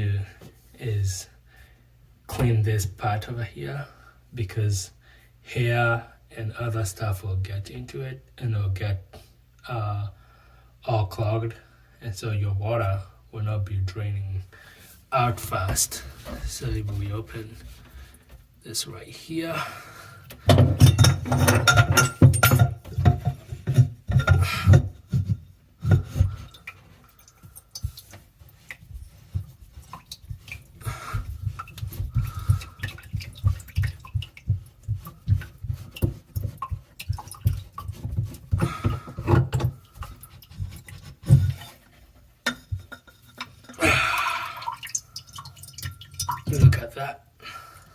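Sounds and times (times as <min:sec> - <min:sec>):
drain parts knocking and rattling: 0:20.3 - 0:47.0.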